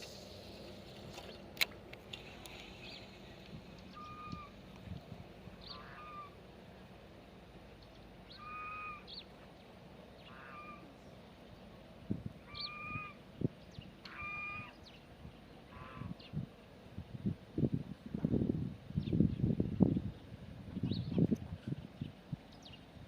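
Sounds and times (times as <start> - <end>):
animal calling with high chirps: 3.9 - 4.6, 8.3 - 9.3, 12.4 - 13.2, 14.1 - 14.9.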